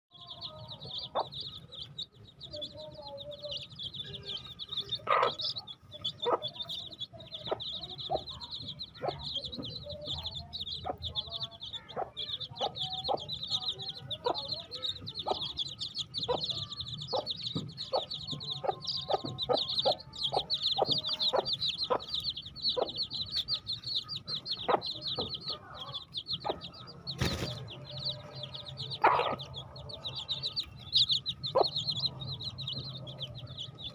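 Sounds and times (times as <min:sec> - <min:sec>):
baby chicks peeping: 0:00.1 - 0:33.9.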